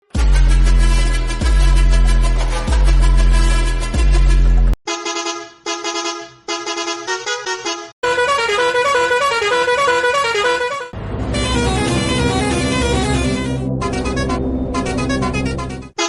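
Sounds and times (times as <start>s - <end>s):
heavy bass: 0.0s - 4.8s, 10.9s - 16.0s
bus horn played as a tune: 2.8s - 16.0s.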